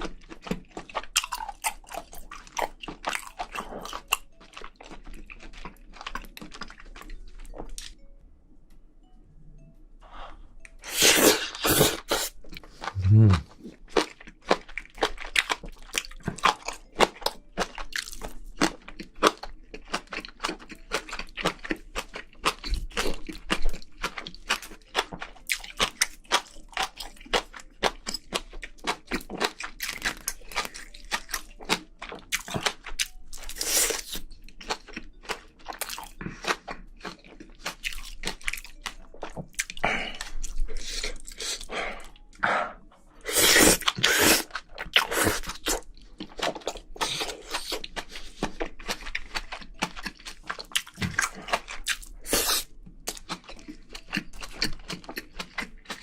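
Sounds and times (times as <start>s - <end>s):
wet crunchy chewing: 0.0s - 8.0s, 10.8s - 42.5s, 43.2s - 56.0s.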